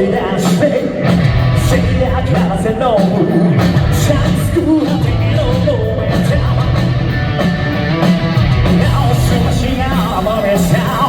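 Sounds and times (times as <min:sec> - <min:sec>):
bass guitar: 0:00.0 - 0:11.0
drums: 0:00.0 - 0:11.0
electric guitars: 0:00.0 - 0:11.0
person singing: 0:08.6 - 0:11.0.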